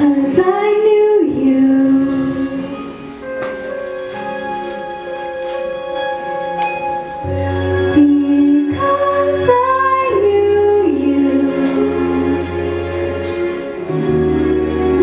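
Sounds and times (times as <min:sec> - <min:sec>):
woman singing: 0:00.0 - 0:02.7
sustained instrumental accompaniment: 0:01.9 - 0:15.0.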